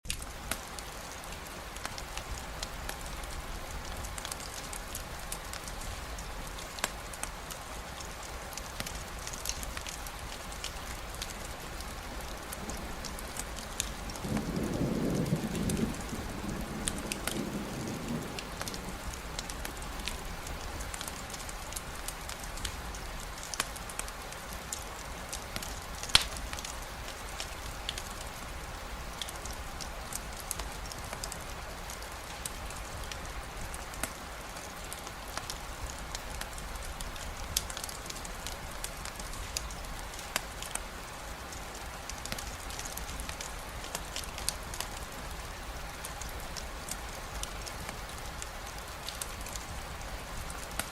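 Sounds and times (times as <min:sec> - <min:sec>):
steady rain: 0:00.0 - 0:50.9
distant thunder rumble: 0:12.0 - 0:21.0.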